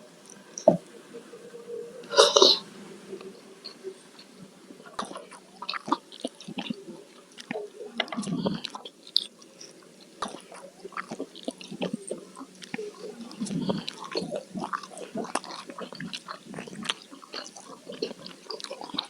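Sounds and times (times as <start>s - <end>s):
mouth clicks: 2.1s - 2.6s
person chewing food: 5.0s - 6.8s, 10.2s - 12.8s, 13.4s - 19.0s.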